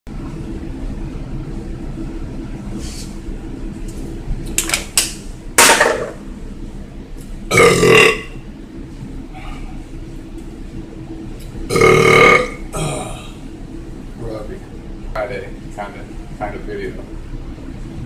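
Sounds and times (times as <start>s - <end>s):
steady low hum: 0.1s - 18.0s
man belching: 7.5s - 8.4s, 11.7s - 13.4s.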